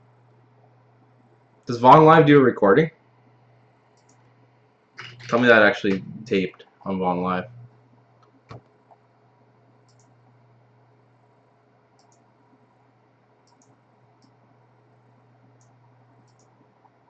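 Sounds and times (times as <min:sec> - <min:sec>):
low steady hum: 0:00.0 - 0:17.0
computer mouse clicks: 0:03.9 - 0:04.3, 0:08.2 - 0:09.0, 0:09.8 - 0:10.3, 0:11.9 - 0:12.3, 0:13.4 - 0:14.4, 0:15.5 - 0:17.0.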